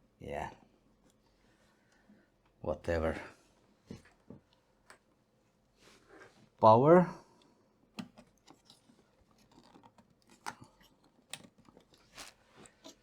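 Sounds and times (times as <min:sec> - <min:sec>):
cables and connectors clicking: 0:09.5 - 0:12.0.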